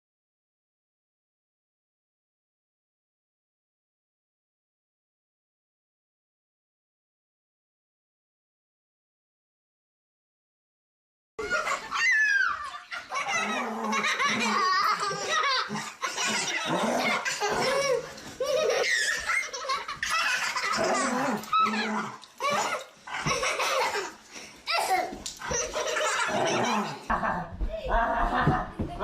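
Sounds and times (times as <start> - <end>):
child laughing: 11.4 - 29.0
people laughing: 11.4 - 29.0.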